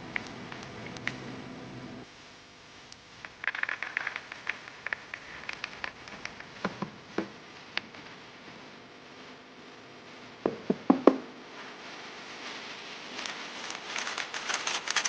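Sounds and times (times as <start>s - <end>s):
computer parts clicking and rattling: 13.8s - 15.0s.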